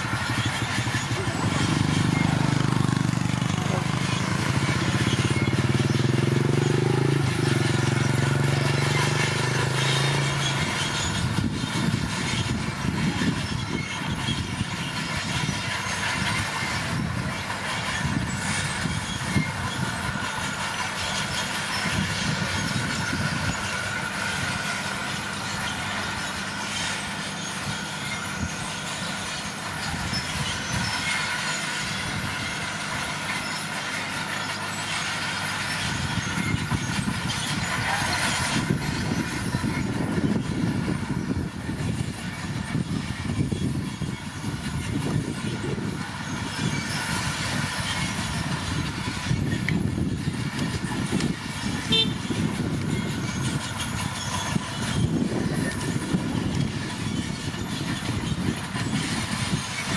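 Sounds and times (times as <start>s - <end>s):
diesel engine drone: 0.0s - 59.9s
steel tracks clanking: 0.0s - 59.9s.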